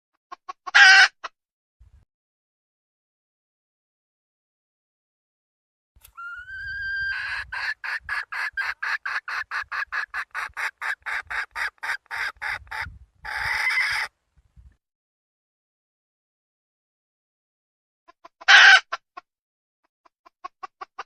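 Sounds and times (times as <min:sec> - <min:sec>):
hen clucking: 0:06.1 - 0:14.1, 0:18.1 - 0:19.2, 0:20.2 - 0:21.0
hen squawk: 0:06.1 - 0:14.1.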